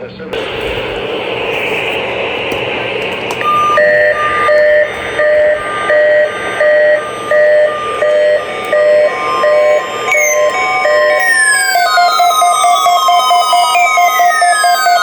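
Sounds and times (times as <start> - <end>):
electronic beeping pattern: 3.0 - 15.0.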